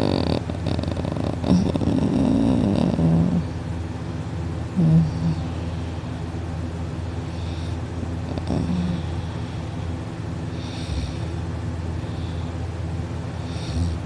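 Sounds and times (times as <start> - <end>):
person snoring: 0.0 - 3.5, 4.8 - 5.7, 7.4 - 9.3
steady low hum: 0.0 - 14.0.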